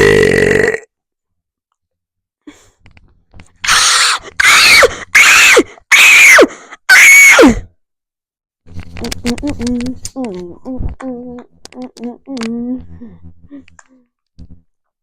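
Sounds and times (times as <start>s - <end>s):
burp into microphone: 0.0s - 0.9s
distorted mouth blasts: 8.9s - 14.6s.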